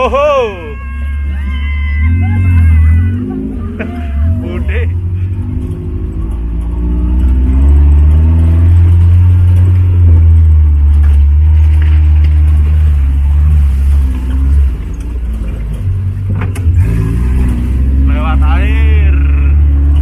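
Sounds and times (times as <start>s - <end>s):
jeep engine revving: 0.0s - 20.0s.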